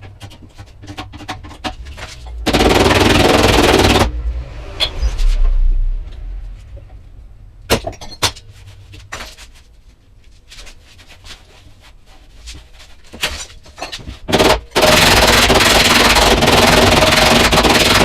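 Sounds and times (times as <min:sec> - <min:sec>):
sharp knocks and clicks: 0:00.0 - 0:04.1
faint low hum: 0:04.1 - 0:13.8.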